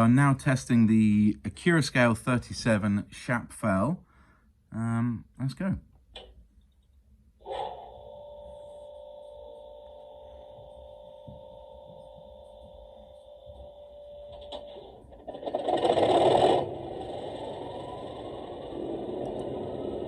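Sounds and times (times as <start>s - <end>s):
loud noisy burst: 13.5s - 20.0s.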